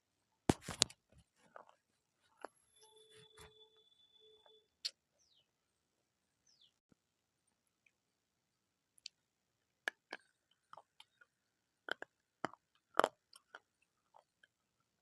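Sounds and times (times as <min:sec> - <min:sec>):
crunching bites of brittle food: 0:09.8 - 0:14.6.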